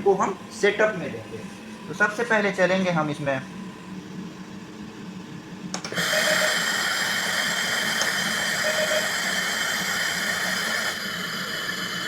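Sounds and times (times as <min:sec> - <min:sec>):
compressor running: 0:00.0 - 0:12.0
ventilator air hiss: 0:05.8 - 0:12.0.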